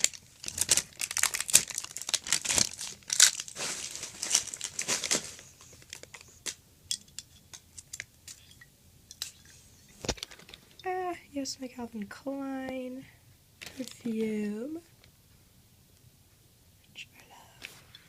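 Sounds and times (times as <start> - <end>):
packaging crinkling and tearing: 0.0 - 6.6.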